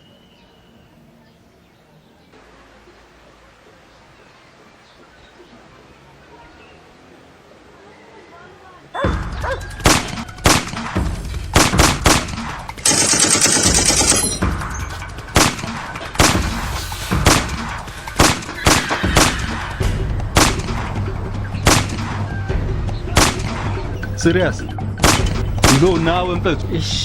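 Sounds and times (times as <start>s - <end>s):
automatic gunfire burst: 9.8s - 10.9s, 11.6s - 14.4s, 15.3s - 16.6s, 17.2s - 19.5s, 21.6s - 22.2s
single gunshots: 9.8s - 14.4s, 15.4s - 19.5s, 20.4s - 21.0s, 21.6s - 22.4s, 23.1s - 23.9s, 25.0s - 26.0s.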